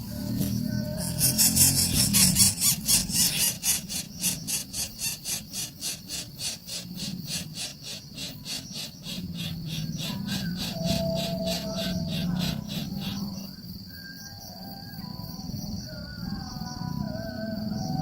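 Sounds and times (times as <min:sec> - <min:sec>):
nestling birds begging calls: 0:00.0 - 0:13.4.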